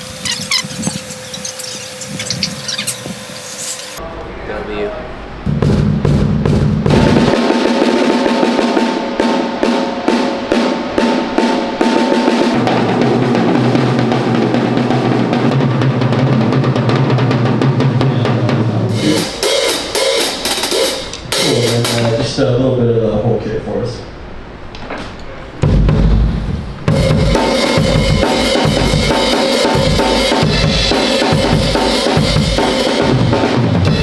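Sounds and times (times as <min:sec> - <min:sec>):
drum kit playing: 0:05.5 - 0:22.4, 0:25.6 - 0:34.0.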